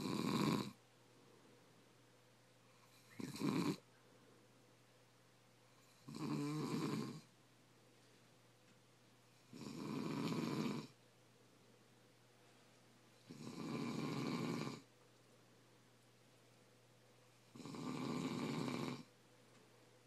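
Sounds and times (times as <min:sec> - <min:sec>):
person snoring: 0:00.0 - 0:00.8, 0:02.8 - 0:03.8, 0:05.8 - 0:07.3, 0:09.4 - 0:11.0, 0:13.2 - 0:14.9, 0:17.4 - 0:19.1.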